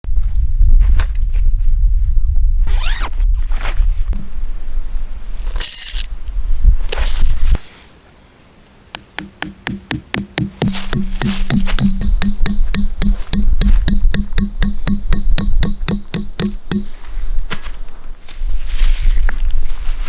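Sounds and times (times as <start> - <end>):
scraping and zipper-like rasping: 2.6 - 4.1, 6.8 - 7.9
electronic music beat: 9.2 - 16.9.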